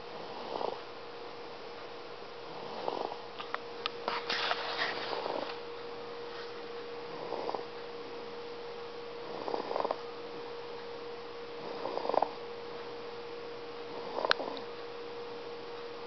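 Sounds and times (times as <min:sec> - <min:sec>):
steady pure tone: 0:00.0 - 0:16.0
person snoring: 0:07.1 - 0:07.7, 0:09.2 - 0:10.0, 0:11.6 - 0:12.4, 0:13.9 - 0:14.7.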